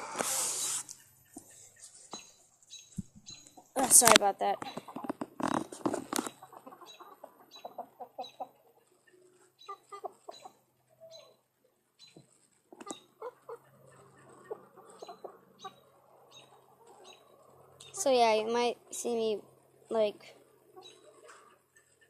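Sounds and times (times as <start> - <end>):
chickens clucking softly: 0.0 - 18.3, 19.4 - 22.0
faint high chirp: 0.9 - 3.8, 9.1 - 11.4, 12.0 - 12.2, 14.9 - 18.0, 20.8 - 21.2.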